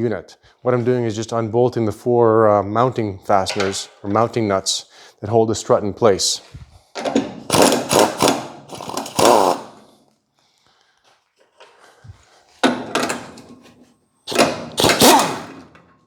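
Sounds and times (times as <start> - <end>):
power tool bursts: 7.5 - 9.8, 14.3 - 15.7.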